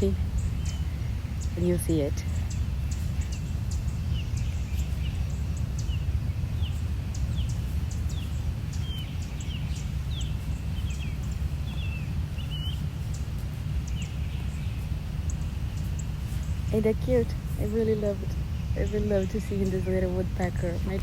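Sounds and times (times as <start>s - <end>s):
bird chirping: 0.0s - 21.0s
steady low rumble: 0.0s - 21.0s.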